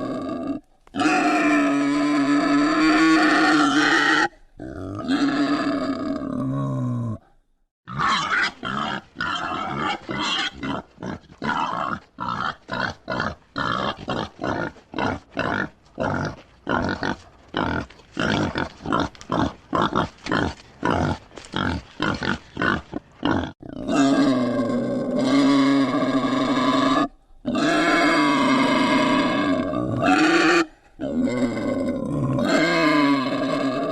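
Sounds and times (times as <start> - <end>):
wild boar grunting: 7.9 - 33.9.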